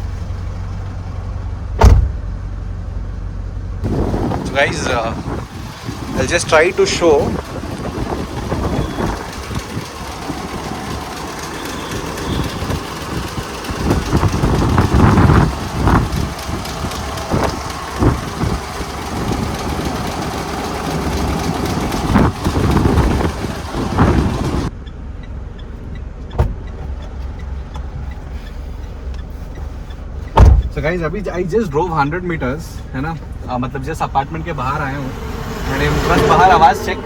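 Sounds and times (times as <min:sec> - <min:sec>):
diesel engine running: 0:00.0 - 0:37.0
short knocks and bumps: 0:01.8 - 0:02.3, 0:26.2 - 0:28.3, 0:29.6 - 0:30.8.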